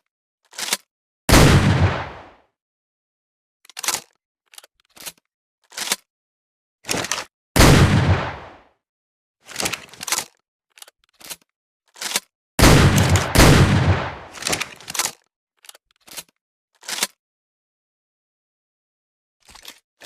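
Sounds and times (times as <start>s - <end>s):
gun action clicks and clacks: 0.5s - 0.9s, 3.7s - 6.1s, 6.9s - 7.3s, 9.5s - 17.2s
shotgun shots with echo: 1.3s - 2.3s, 7.6s - 8.6s, 12.6s - 14.6s.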